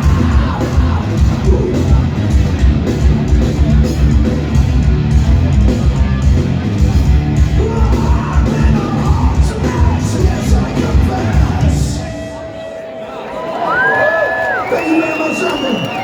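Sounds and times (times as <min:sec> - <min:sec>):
pounding drum beat: 0:00.0 - 0:12.2
live rock band playing: 0:00.0 - 0:12.8.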